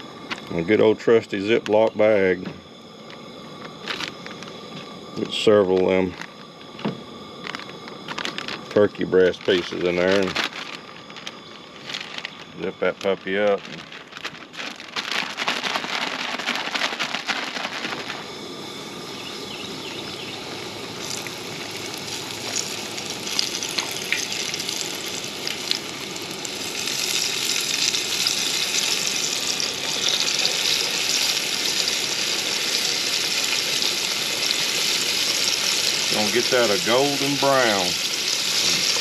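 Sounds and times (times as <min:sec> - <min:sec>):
meat sizzling in oil: 0:14.4 - 0:39.0.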